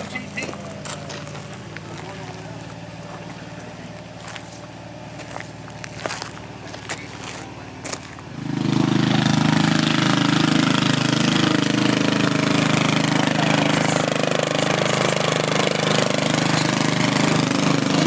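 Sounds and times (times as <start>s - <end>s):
riding lawn mower engine: 0.0s - 18.0s.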